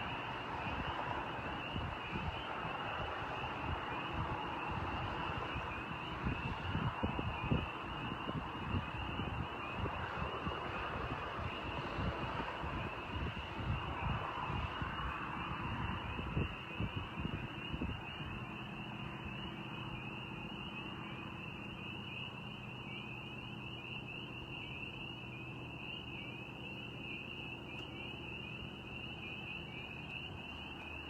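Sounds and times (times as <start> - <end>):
spring peepers chorus: 0.0 - 31.0
wind buffeting microphone: 0.6 - 20.8.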